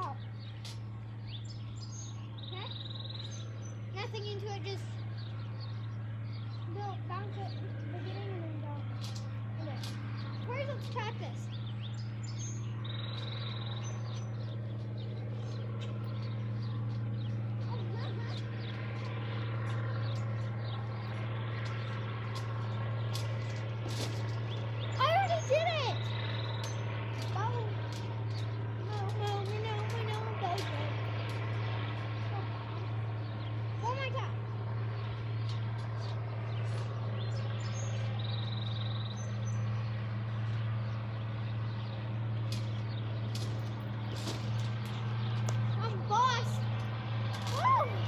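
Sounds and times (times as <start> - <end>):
birds chirping: 0.0 - 48.0
low machine hum: 0.0 - 48.0.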